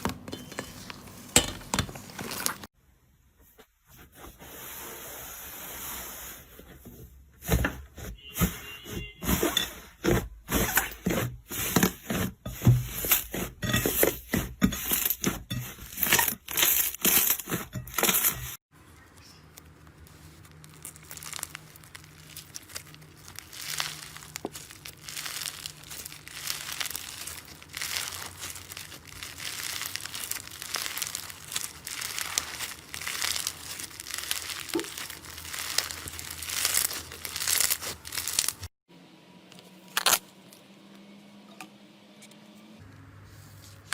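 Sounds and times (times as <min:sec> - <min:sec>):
slime crackling by hand: 0:19.5 - 0:38.7.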